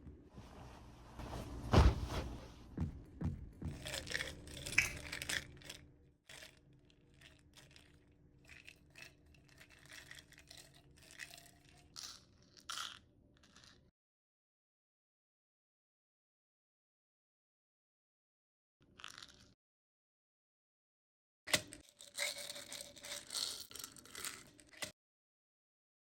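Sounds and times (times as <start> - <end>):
objects being handled: 0.4 - 6.5.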